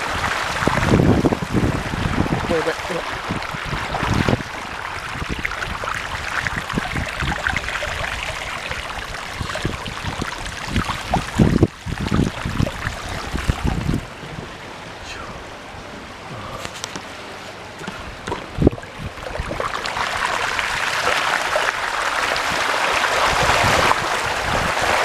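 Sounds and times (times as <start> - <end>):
wind thumps on microphone: 0.0 - 14.5, 17.8 - 19.8, 22.4 - 25.0
water sloshing and splashing: 0.0 - 25.0.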